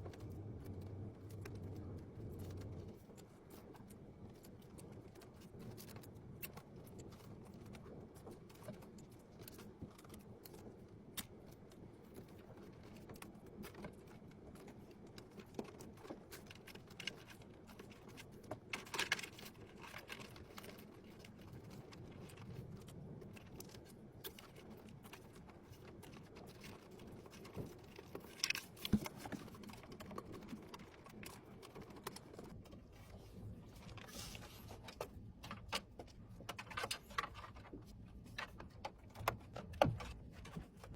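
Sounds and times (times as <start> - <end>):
low steady hum: 0.0 - 16.0, 16.6 - 40.9
small hardware clicking and rattling: 8.5 - 40.9.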